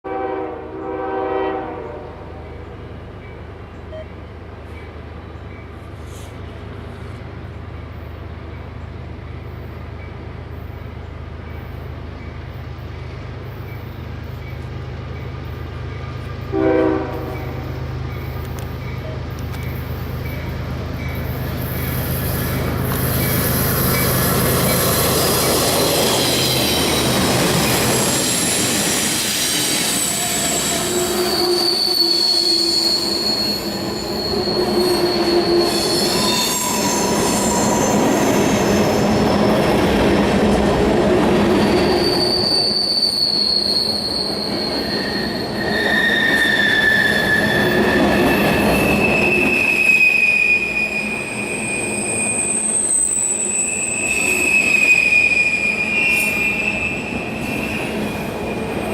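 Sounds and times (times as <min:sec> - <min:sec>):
rumble of wheels on track: 0:00.1 - 0:58.9
train wheels squealing: 0:17.3 - 0:39.9, 0:41.2 - 0:58.9.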